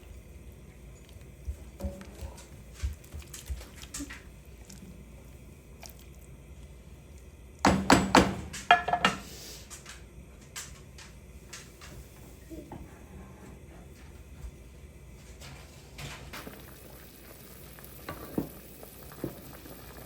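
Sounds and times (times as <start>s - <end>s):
pots and utensils clanking: 1.0s - 2.5s, 7.7s - 9.4s.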